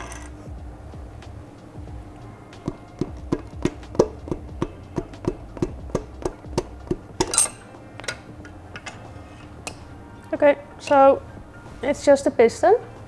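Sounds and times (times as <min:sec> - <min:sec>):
sharp taps on metal engine parts: 0:01.2 - 0:10.0.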